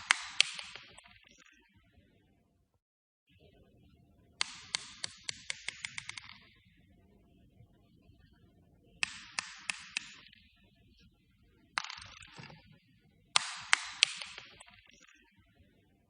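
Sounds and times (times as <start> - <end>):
small hard ball bouncing on floor: 9.0 - 10.3, 11.8 - 12.7, 13.4 - 14.7.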